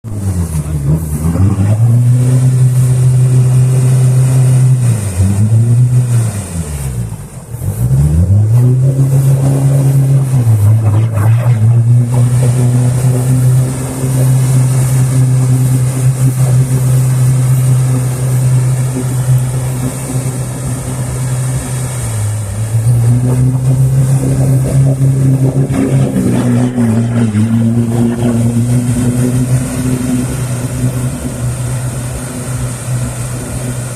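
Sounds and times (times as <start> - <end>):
off-road engine revving hard: 0.0 - 33.9.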